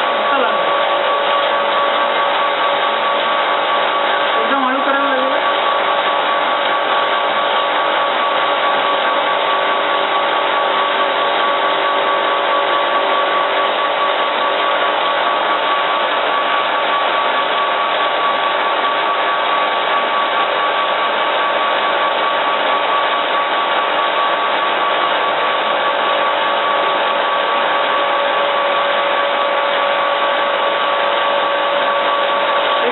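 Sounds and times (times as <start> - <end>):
grinding machine whine: 0.0 - 32.9.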